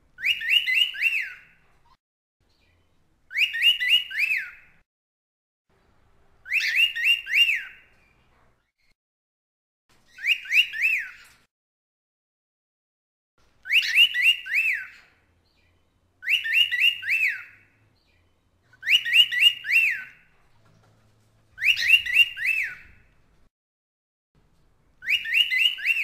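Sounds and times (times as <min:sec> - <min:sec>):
cockatiel whistling: 0:00.2 - 0:01.6, 0:03.3 - 0:04.7, 0:06.4 - 0:07.9, 0:10.1 - 0:11.2, 0:13.6 - 0:15.1, 0:16.2 - 0:17.7, 0:18.7 - 0:20.3, 0:21.6 - 0:23.1, 0:25.0 - 0:26.0.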